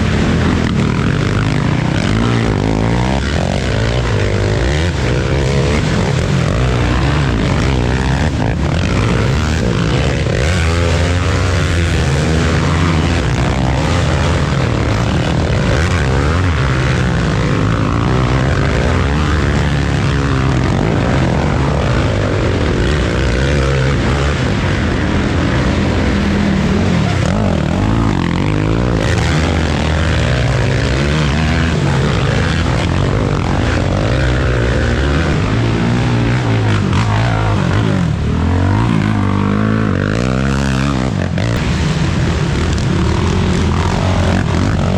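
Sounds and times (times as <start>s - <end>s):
racing atv engines revving: 0.0s - 44.9s.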